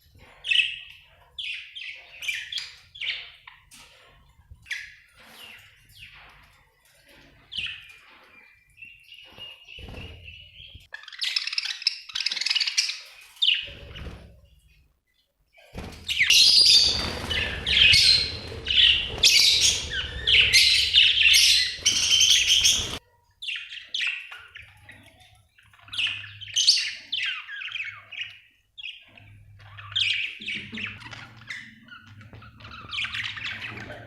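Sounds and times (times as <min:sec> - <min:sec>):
budgerigars chirping: 0:16.1 - 0:24.4.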